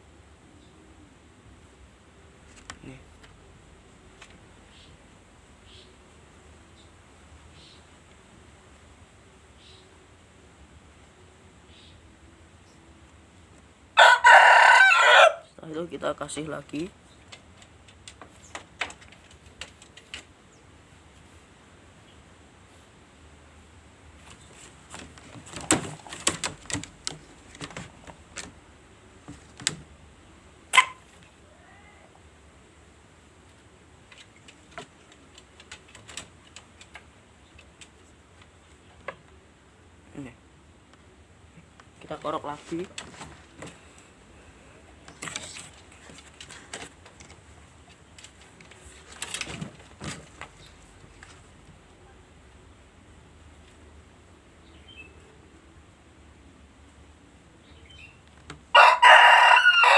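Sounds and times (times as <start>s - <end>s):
sharp chicken cry: 14.0s - 15.5s, 30.7s - 32.2s, 58.8s - 59.9s
clicks and knocks of handling: 17.2s - 20.3s.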